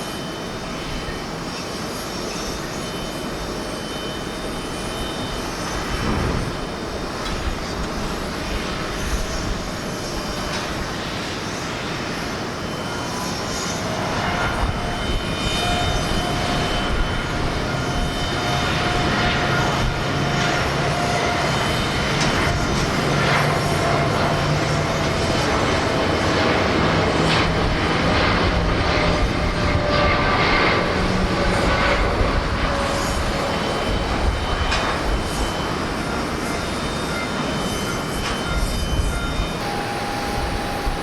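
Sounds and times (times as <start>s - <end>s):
jet engines at takeoff: 0.0s - 41.0s
wind rumbling on microphone: 5.6s - 12.0s, 13.8s - 36.8s.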